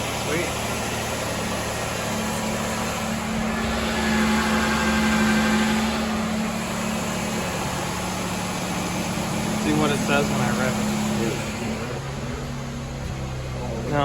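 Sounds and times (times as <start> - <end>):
car engine idling: 0.0 - 14.0.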